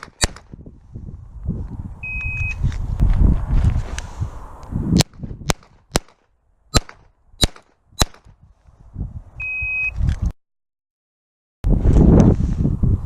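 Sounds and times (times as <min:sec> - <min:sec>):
pistol shots: 0:00.0 - 0:00.5, 0:05.5 - 0:06.2, 0:06.8 - 0:08.3
short electronic beep: 0:02.0 - 0:02.6, 0:09.4 - 0:10.0.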